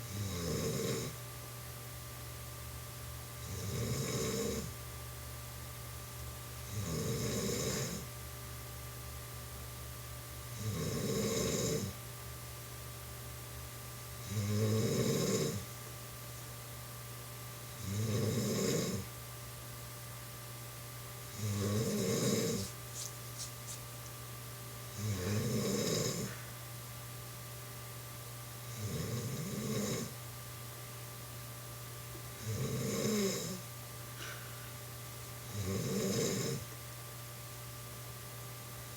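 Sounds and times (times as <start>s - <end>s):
steady low hum: 0.0s - 38.9s
woman snoring: 0.1s - 1.2s, 3.4s - 4.7s, 6.7s - 8.1s, 10.6s - 12.0s, 14.2s - 15.6s, 17.8s - 19.1s, 21.4s - 22.7s, 24.9s - 26.4s, 28.8s - 30.2s, 32.4s - 33.6s, 35.5s - 36.6s.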